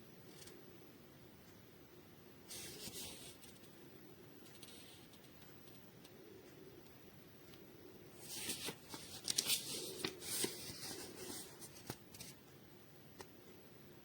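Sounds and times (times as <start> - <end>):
rustling and crinkling handling: 8.2 - 12.4.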